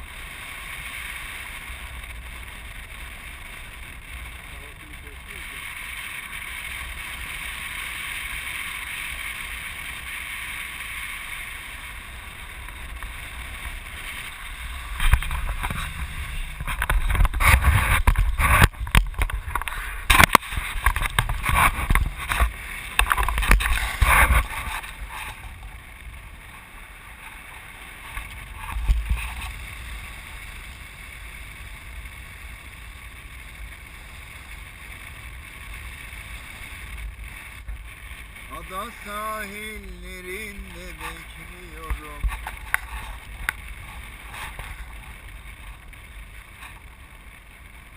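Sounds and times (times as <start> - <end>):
wind rushing over microphone: 0.0 - 47.9.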